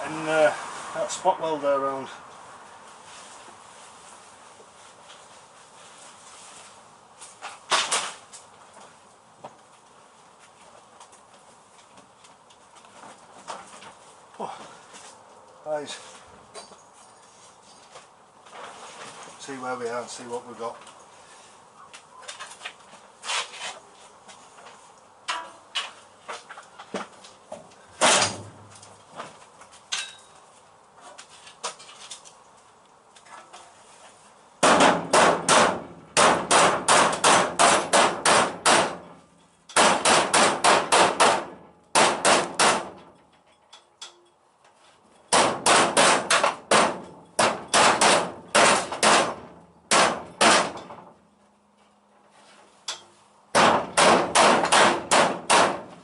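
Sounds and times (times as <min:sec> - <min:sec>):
hammer striking metal panel: 0:34.6 - 0:39.1, 0:39.7 - 0:43.0, 0:45.3 - 0:51.0, 0:53.6 - 0:56.0.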